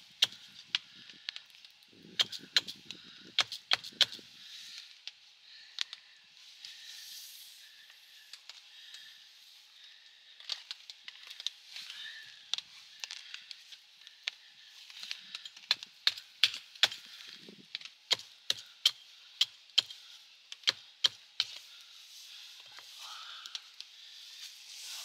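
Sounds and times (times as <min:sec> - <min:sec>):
wood being chopped: 0:02.2 - 0:02.7, 0:03.4 - 0:04.2.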